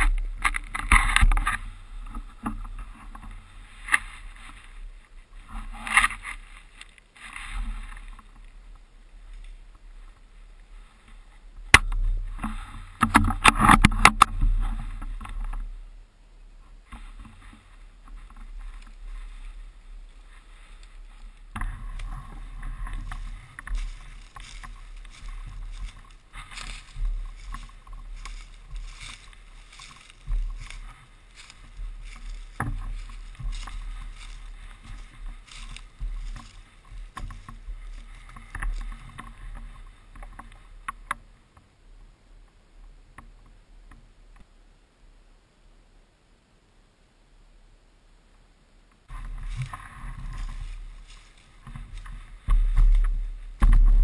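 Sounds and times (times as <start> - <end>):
rustling handling noise: 0.0 - 15.8, 16.9 - 41.3, 49.1 - 54.0
constant low rumble: 0.0 - 54.0.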